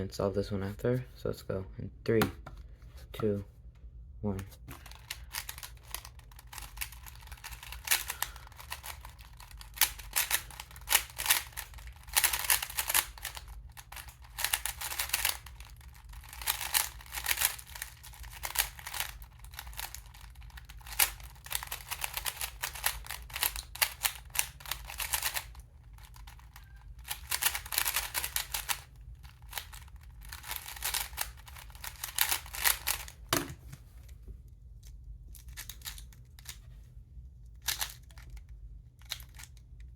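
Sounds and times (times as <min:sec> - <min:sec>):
speed cube clicking and rattling: 0:04.7 - 0:33.3, 0:35.4 - 0:36.6, 0:37.6 - 0:39.9.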